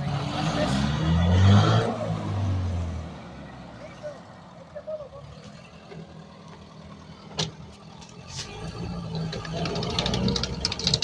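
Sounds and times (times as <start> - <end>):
engine turning over with clatter: 8.3 - 11.0.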